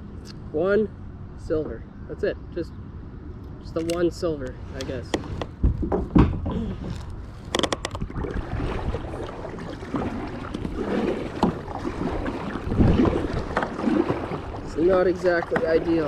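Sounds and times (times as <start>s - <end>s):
wind rumbling on microphone: 0.0s - 16.0s
water lapping at kayak hull: 4.6s - 16.0s.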